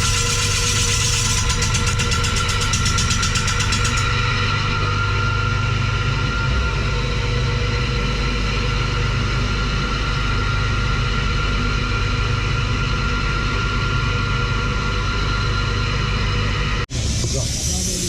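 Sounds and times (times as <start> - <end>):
high motor whine: 0.0 - 18.0
machine motor humming: 0.0 - 18.0.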